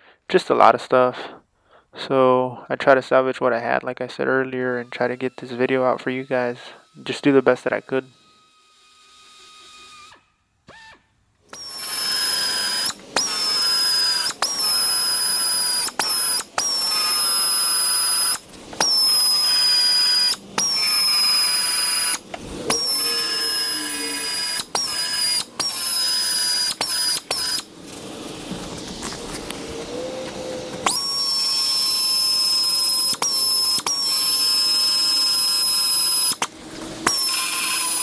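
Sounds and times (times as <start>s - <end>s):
power drill whining: 4.6s - 38.0s.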